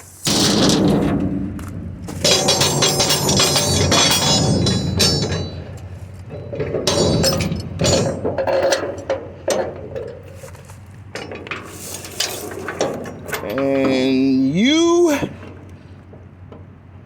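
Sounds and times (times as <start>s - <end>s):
scrap metal clanking: 0.0s - 14.4s
metallic ring: 2.1s - 9.1s.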